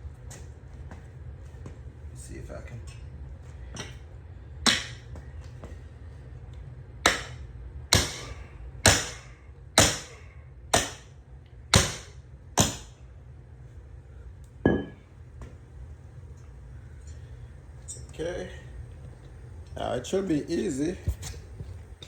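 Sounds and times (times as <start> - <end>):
hammer striking metal blade: 7.1 - 10.2, 10.8 - 11.1, 11.8 - 12.9.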